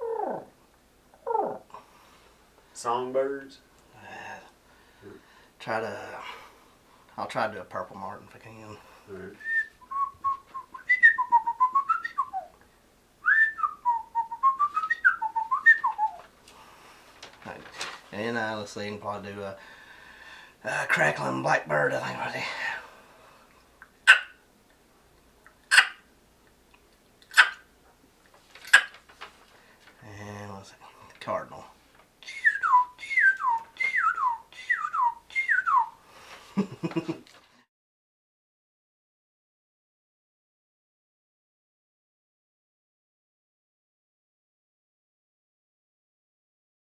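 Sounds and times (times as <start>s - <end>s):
man whistling bird song: 9.4s - 12.5s, 13.2s - 16.2s, 32.3s - 36.0s.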